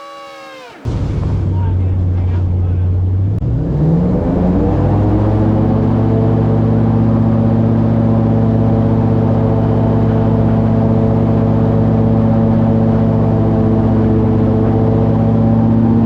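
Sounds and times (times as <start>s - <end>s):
airboat engine running: 0.0s - 1.0s, 5.0s - 16.0s.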